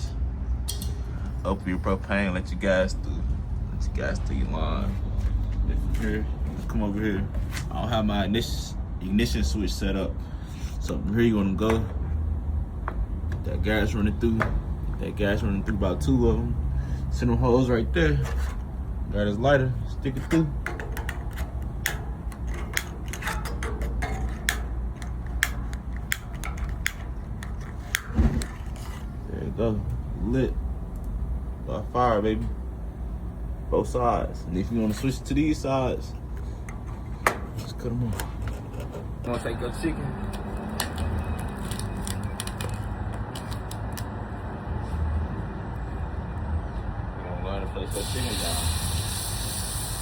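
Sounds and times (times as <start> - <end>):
gas burners hissing: 9.2 - 42.7, 47.8 - 50.0.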